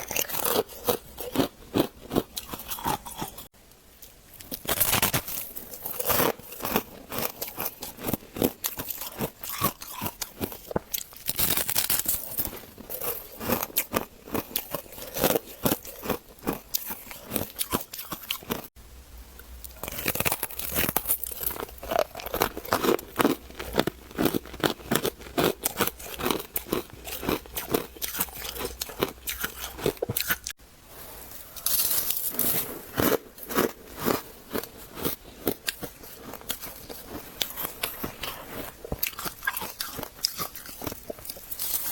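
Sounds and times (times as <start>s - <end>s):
chewing crisp frost crunches: 0.0s - 3.5s, 4.4s - 18.7s, 19.6s - 30.6s, 31.6s - 41.9s
faint low hum: 18.8s - 32.9s.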